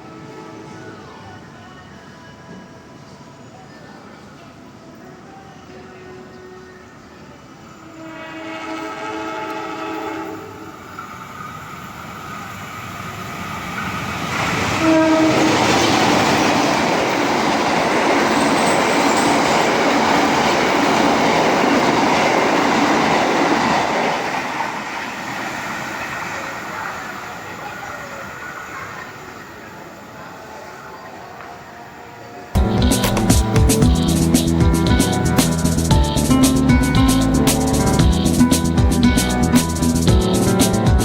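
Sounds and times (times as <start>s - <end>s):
train horn: 0.0s - 1.4s, 7.8s - 11.0s, 14.7s - 16.8s
train passing with wheels clattering: 0.0s - 41.0s.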